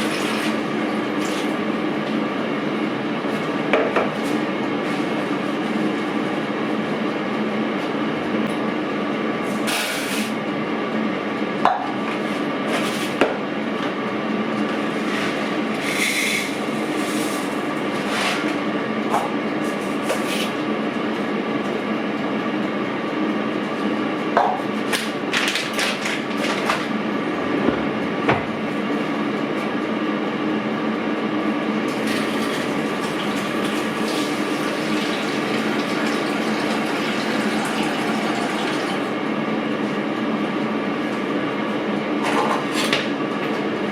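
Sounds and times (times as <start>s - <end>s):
mechanical hum: 0.0s - 43.9s.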